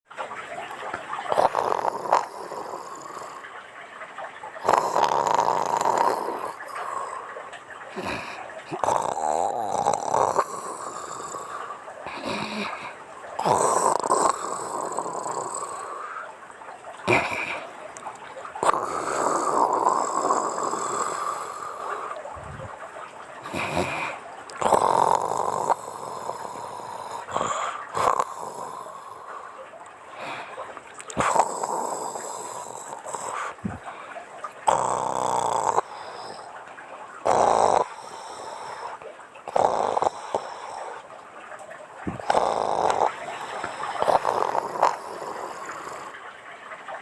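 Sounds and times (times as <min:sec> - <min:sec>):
woman snoring: 0:01.3 - 0:03.4, 0:04.6 - 0:07.1, 0:08.0 - 0:16.0, 0:18.6 - 0:21.9, 0:23.5 - 0:29.2, 0:31.2 - 0:33.8, 0:34.7 - 0:36.3, 0:37.2 - 0:38.0, 0:39.5 - 0:40.4, 0:42.1 - 0:43.2, 0:44.0 - 0:46.1.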